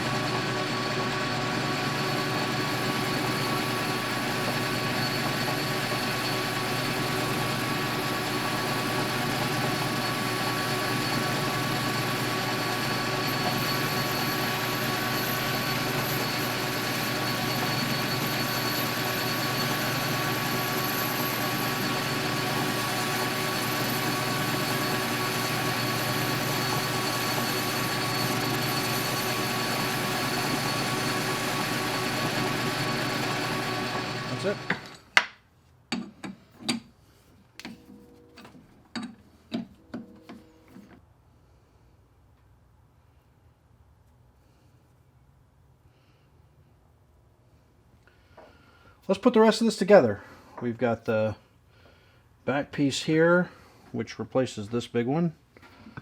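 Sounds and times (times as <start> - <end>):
metal lathe humming and whining: 0.0 - 35.0.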